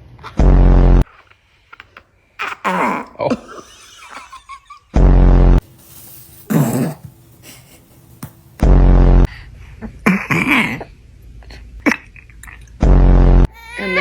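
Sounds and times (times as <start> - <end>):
baby vocal sounds: 1.7 - 3.3, 13.5 - 14.0.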